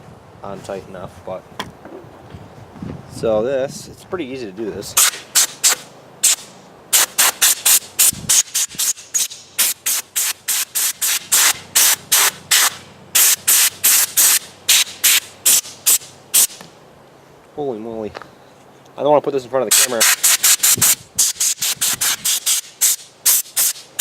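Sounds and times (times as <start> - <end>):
air blow gun blasts: 5.0 - 16.6, 19.7 - 24.0.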